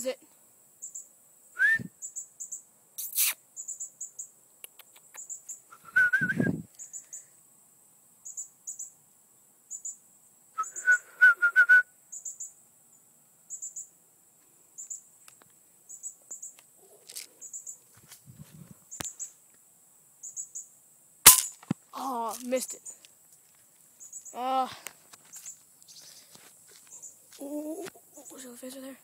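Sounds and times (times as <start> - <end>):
high-pitched insect chirping: 0.0 - 14.0, 14.7 - 29.0
birdsong: 15.9 - 17.8, 24.0 - 24.6, 25.3 - 27.3.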